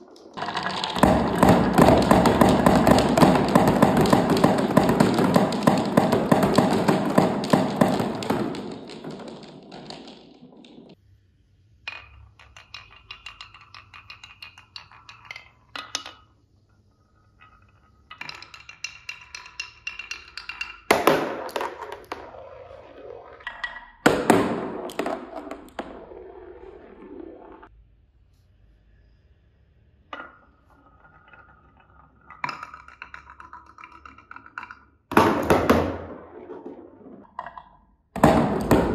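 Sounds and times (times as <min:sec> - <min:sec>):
marbles clattering: 0:00.0 - 0:11.0, 0:11.9 - 0:16.4, 0:17.2 - 0:27.7, 0:30.1 - 0:38.9
marbles clicking along wooden track: 0:00.0 - 0:11.0, 0:11.9 - 0:16.4, 0:17.2 - 0:27.7, 0:30.2 - 0:38.9
sharp knocks: 0:00.4 - 0:10.9.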